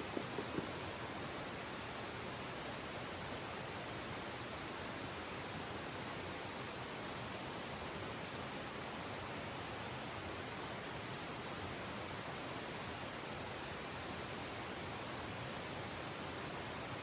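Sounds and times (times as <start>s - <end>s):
rushing background noise outdoors: 0.0s - 17.0s.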